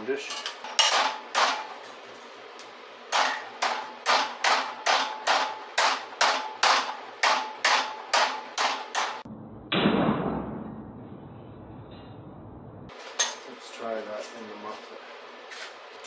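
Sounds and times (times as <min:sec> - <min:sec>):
hammer ringing on steel sheet: 0:03.2 - 0:09.2.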